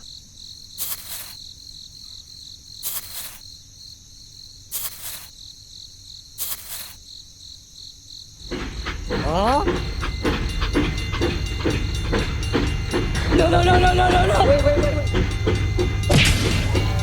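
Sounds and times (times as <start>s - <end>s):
crickets chirping: 0.0s - 17.0s
hissy burst: 0.8s - 1.4s, 2.8s - 3.4s, 4.7s - 5.3s, 6.4s - 7.0s.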